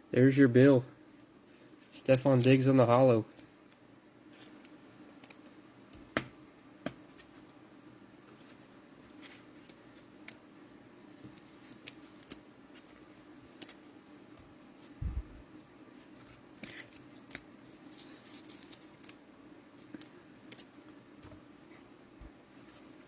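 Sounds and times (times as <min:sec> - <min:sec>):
handling cards and wrappers: 0:01.2 - 0:05.6, 0:08.1 - 0:21.8.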